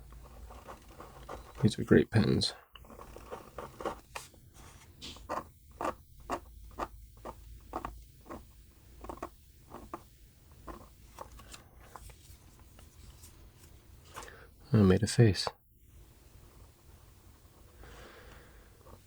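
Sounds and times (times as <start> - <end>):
pen scratching on paper: 0.0 - 11.4.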